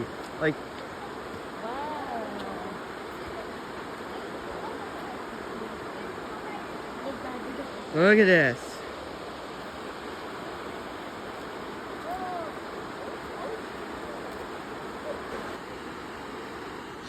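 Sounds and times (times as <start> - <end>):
river rushing over rapids: 0.0 - 17.0.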